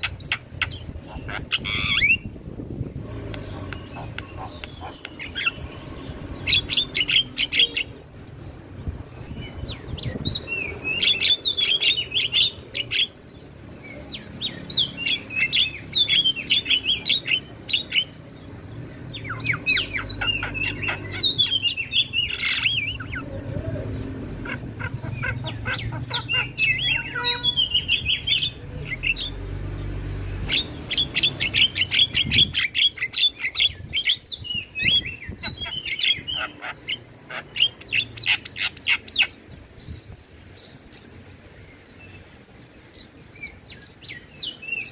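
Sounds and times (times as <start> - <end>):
bird chattering song: 0.0 - 2.3, 3.2 - 44.9.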